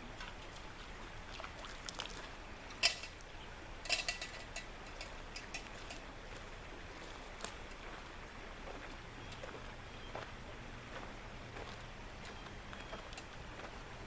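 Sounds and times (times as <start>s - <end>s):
camp gear clicking and clinking: 2.7s - 3.2s, 3.8s - 6.1s
metal clattering with ring: 2.7s - 3.2s, 3.8s - 6.0s.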